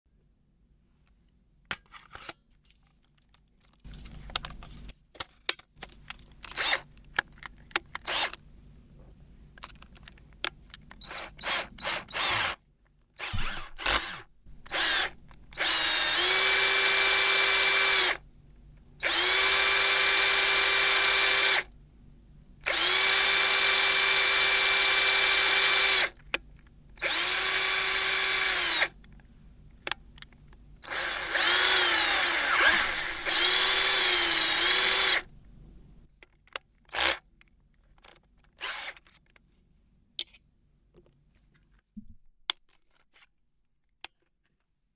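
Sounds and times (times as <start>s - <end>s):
power drill whining: 6.5s - 6.8s, 8.0s - 8.4s, 11.0s - 12.6s, 13.2s - 18.2s, 19.0s - 21.7s, 22.7s - 26.2s, 27.0s - 29.0s, 30.8s - 35.3s, 38.6s - 39.0s.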